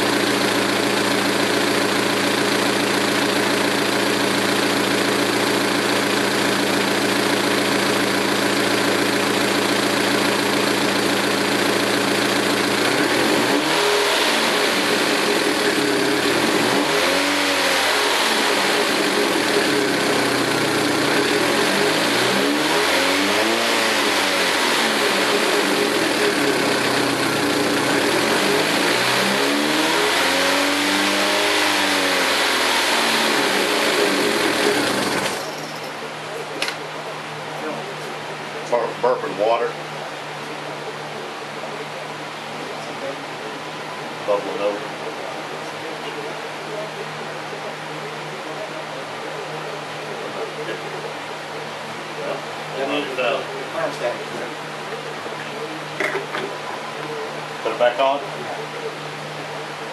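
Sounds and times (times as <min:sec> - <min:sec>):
car engine idling and revving: 0:00.0 - 0:35.9.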